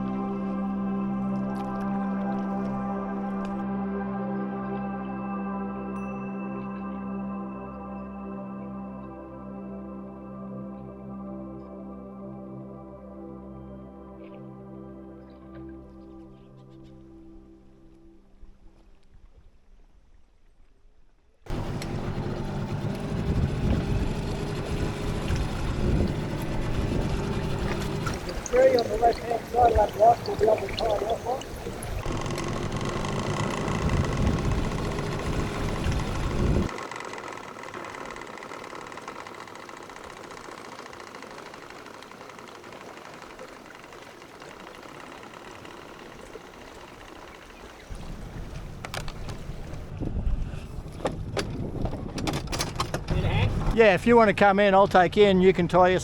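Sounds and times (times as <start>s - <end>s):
boat engine running: 0.0s - 3.6s, 21.5s - 56.0s
wind buffeting microphone: 21.5s - 36.7s, 47.1s - 54.3s.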